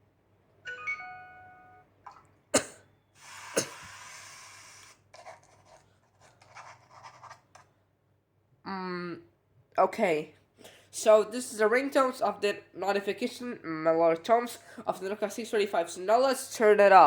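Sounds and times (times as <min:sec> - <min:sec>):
phone notification chime: 0:00.7 - 0:01.9.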